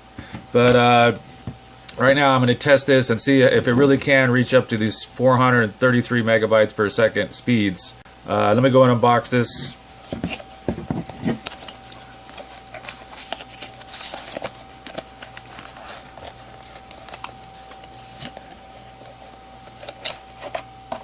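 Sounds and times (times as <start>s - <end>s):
faint steady whine: 0.0s - 21.0s
packaging rustling and crinkling: 10.0s - 21.0s.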